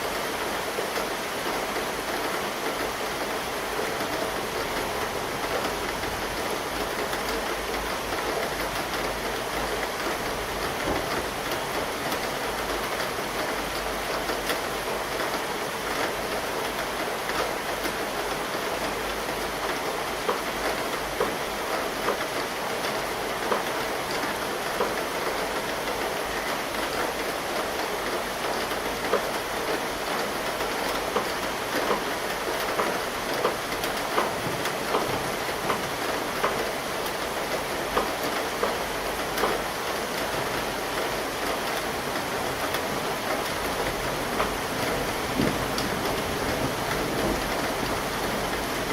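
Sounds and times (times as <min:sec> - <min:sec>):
steady rain: 0:00.0 - 0:48.9
rain drop ticks: 0:31.1 - 0:37.2, 0:37.9 - 0:40.4, 0:41.0 - 0:47.8.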